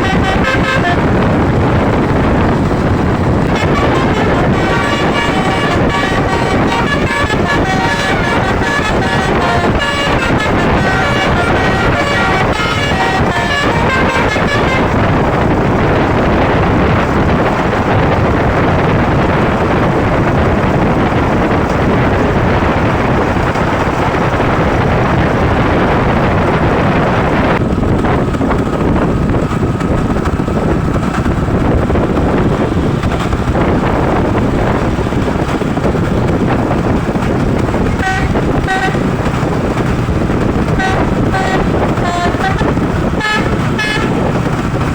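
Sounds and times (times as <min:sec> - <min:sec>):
musical bus horn tune: 0:00.0 - 0:16.4, 0:37.4 - 0:44.6
road and wind noise: 0:00.0 - 0:44.9.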